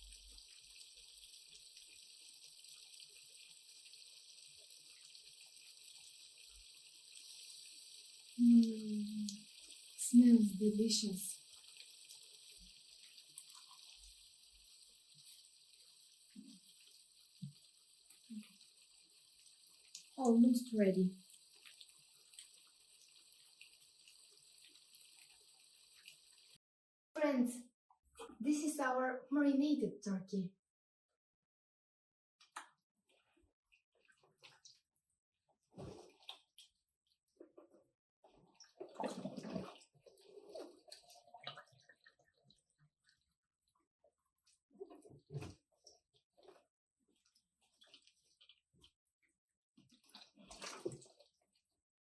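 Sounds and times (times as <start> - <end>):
food sizzling in a pan: 0.0 - 26.6.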